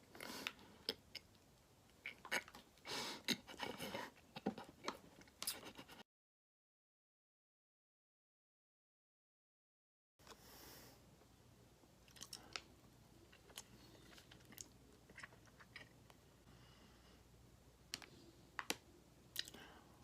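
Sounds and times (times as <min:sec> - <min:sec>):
chewing with crunching clicks: 0:04.3 - 0:06.0, 0:12.1 - 0:12.7, 0:13.3 - 0:16.2
low steady hum: 0:10.2 - 0:20.0.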